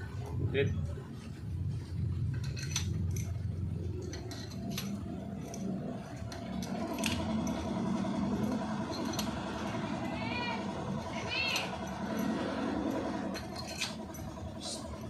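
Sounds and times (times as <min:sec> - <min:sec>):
steady low rumble: 0:00.0 - 0:15.0
metal clinks of hand tools: 0:02.4 - 0:09.8, 0:11.2 - 0:14.4.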